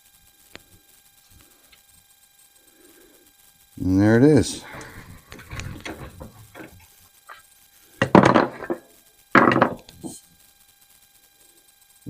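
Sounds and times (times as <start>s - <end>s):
loud clunks with a scrape: 4.6s - 6.8s, 8.0s - 8.8s, 9.4s - 9.9s
small clicks and knocks of tools: 4.6s - 6.8s.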